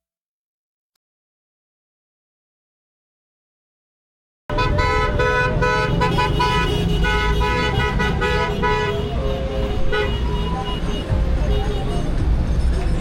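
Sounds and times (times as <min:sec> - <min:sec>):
car horns beeping: 0:04.5 - 0:13.0
road traffic rumble: 0:04.5 - 0:13.0.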